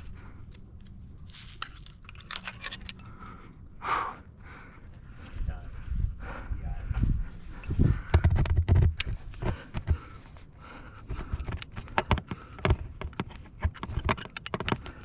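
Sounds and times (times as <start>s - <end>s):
climbing gear clinking: 0.0s - 3.4s, 11.1s - 15.0s.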